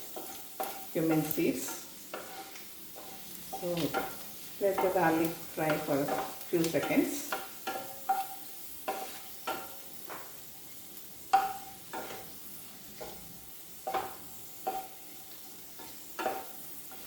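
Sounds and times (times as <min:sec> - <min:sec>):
garlic sizzling in hot oil: 0:00.0 - 0:17.0.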